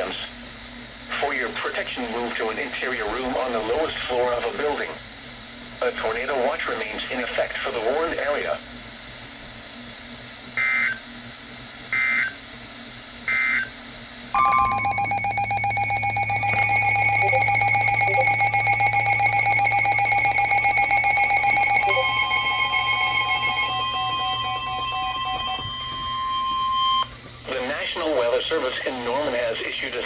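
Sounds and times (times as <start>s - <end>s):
pulsing electronic alarm beeps: 10.6s - 11.0s, 12.0s - 12.4s, 13.3s - 13.7s, 14.4s - 27.1s
steady alarm tone: 10.6s - 11.0s, 14.4s - 27.2s
digital data tones: 14.4s - 27.1s.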